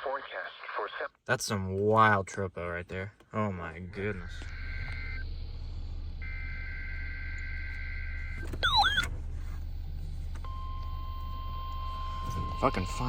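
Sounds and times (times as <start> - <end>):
steady warning alarm tone: 4.2 - 9.2, 10.4 - 13.0.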